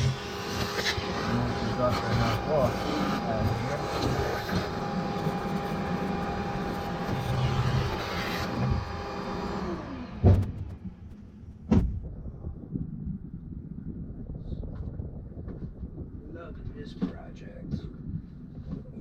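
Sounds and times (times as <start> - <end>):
electric motor whining: 0.0 - 11.4
loud knocks: 10.2 - 12.1.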